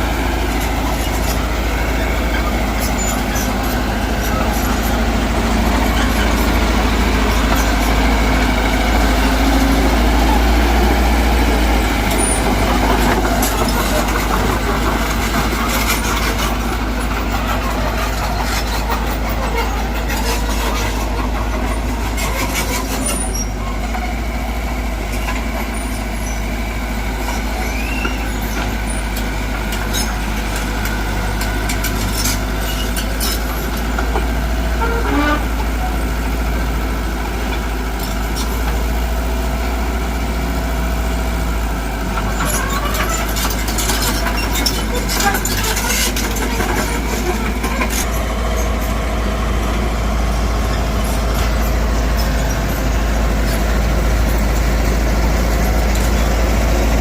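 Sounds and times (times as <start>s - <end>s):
heavy machinery diesel engine: 0.0s - 57.0s.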